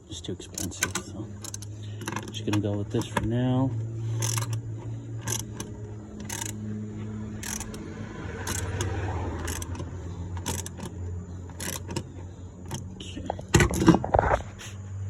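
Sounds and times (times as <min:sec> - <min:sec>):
steady low hum: 0:00.0 - 0:15.0
metallic clicks of hand tools: 0:00.5 - 0:03.3, 0:04.2 - 0:04.6, 0:05.2 - 0:06.6, 0:07.4 - 0:07.8, 0:08.4 - 0:12.0.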